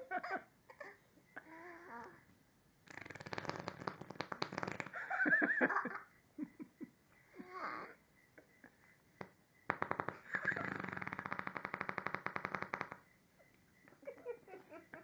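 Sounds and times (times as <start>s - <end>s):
child giggling: 0.0s - 0.9s, 5.1s - 6.8s, 7.4s - 7.9s.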